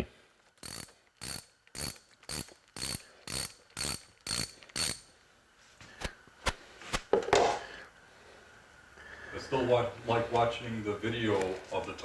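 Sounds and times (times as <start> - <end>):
ratchet wrench rasping: 0.6 - 5.1.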